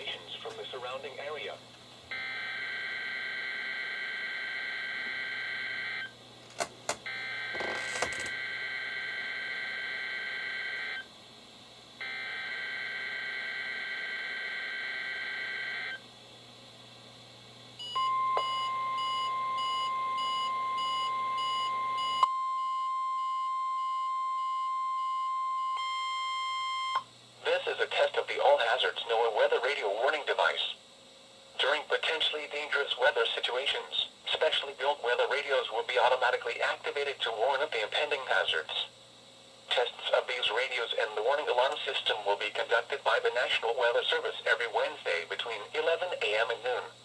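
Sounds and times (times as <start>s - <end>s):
steady warning alarm tone: 2.1s - 6.2s, 7.0s - 11.1s, 12.0s - 16.0s, 17.8s - 27.1s.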